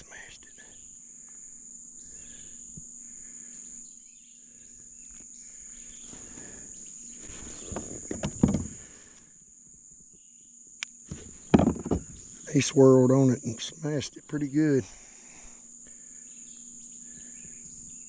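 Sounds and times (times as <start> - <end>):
insects droning: 0.0 - 18.0
loud knocks: 11.1 - 12.2.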